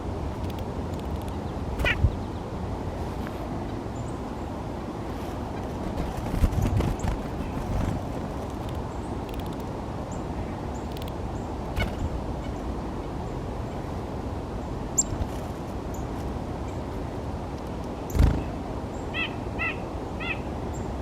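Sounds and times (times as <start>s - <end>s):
steady low background noise: 0.0s - 21.0s
small birds chirping: 1.1s - 2.6s, 5.4s - 13.9s, 14.6s - 17.1s, 17.8s - 21.0s.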